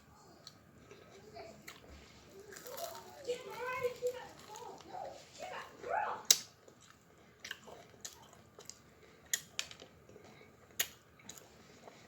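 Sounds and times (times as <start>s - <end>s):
chewing chicken wings: 6.2s - 12.0s.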